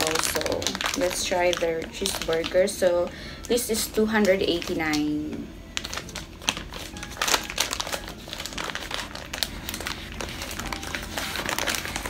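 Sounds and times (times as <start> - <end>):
food wrapper crinkling: 0.0 - 5.0, 5.8 - 12.0.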